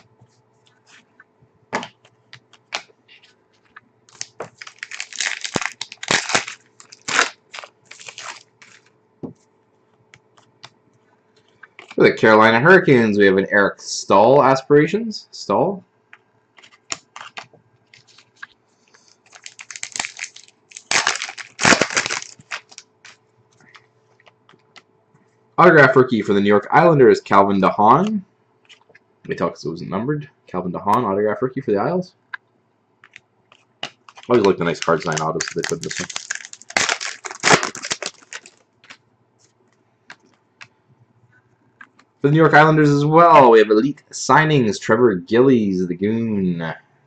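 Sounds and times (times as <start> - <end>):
packaging rustling and crinkling: 3.5 - 8.9, 16.6 - 24.6, 33.1 - 39.0.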